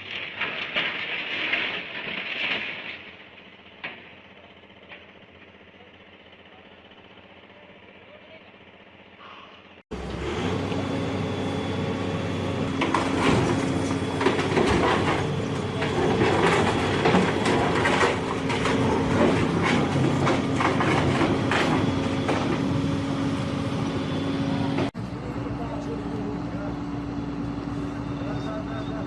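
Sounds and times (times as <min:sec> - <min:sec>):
heavy machinery droning: 0:02.9 - 0:29.0
metallic clanks and rattles: 0:12.8 - 0:22.7.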